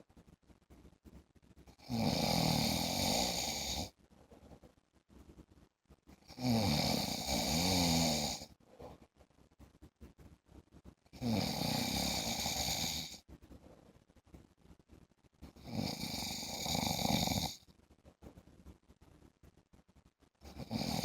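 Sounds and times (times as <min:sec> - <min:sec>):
man snoring: 0:01.8 - 0:03.9, 0:06.3 - 0:08.5, 0:11.2 - 0:13.2, 0:15.6 - 0:17.6, 0:20.5 - 0:21.0.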